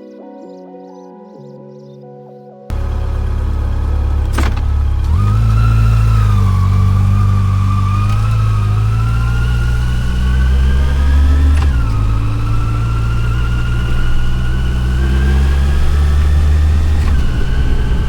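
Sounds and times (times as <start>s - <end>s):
motorcycle engine accelerating: 2.7s - 18.0s
sharp click: 4.2s - 4.7s.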